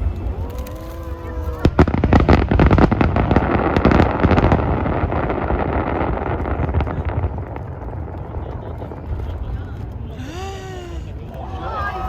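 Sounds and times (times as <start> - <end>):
fireworks crackling and banging: 0.0 - 12.0
low rumble: 0.0 - 12.0.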